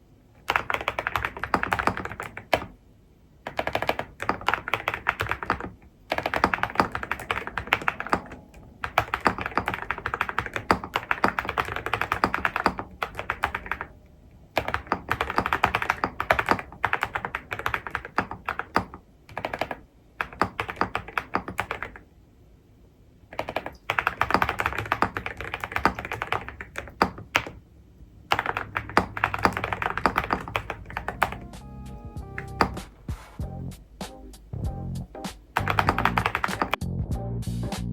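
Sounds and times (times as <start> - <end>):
mechanical keyboard typing: 0.4 - 2.8, 3.4 - 13.9, 14.5 - 22.0, 23.3 - 27.6, 28.2 - 31.6, 32.2 - 32.9, 35.5 - 36.8.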